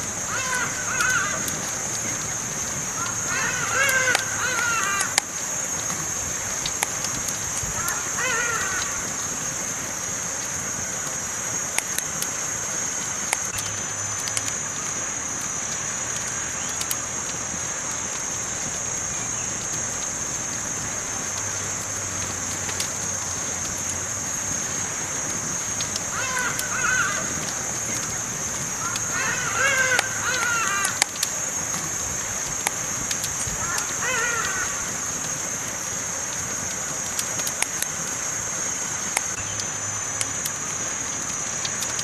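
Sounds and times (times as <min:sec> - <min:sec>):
campfire crackling: 0:00.0 - 0:42.0
bird calling: 0:00.2 - 0:06.4, 0:07.6 - 0:09.5, 0:24.6 - 0:32.6, 0:33.4 - 0:35.4.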